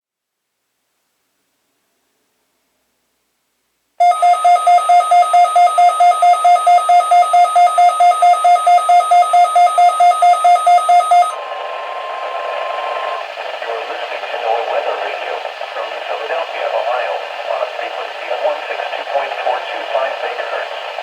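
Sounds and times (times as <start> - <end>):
radio alarm beeping rapidly: 4.0 - 11.4
staticky radio hiss: 11.3 - 21.0.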